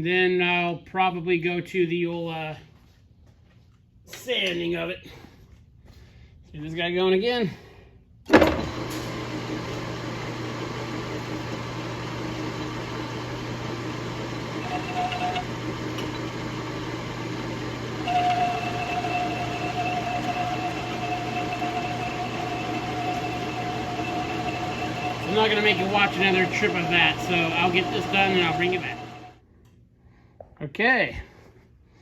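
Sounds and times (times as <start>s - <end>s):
metal lathe humming: 8.5s - 29.4s
high whine: 10.8s - 29.4s.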